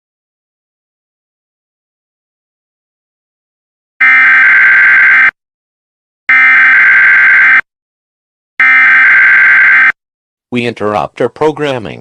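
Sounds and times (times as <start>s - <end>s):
harsh high data-tone bursts: 6.3s - 7.6s, 8.6s - 10.0s.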